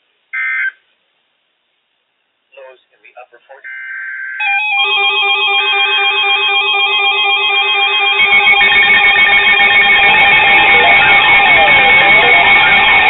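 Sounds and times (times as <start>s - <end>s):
weather radio alert tones: 3.6s - 13.0s.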